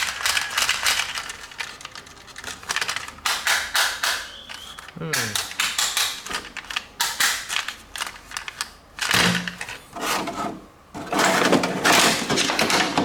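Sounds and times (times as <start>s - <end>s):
toy parts clicking: 0.0s - 9.7s.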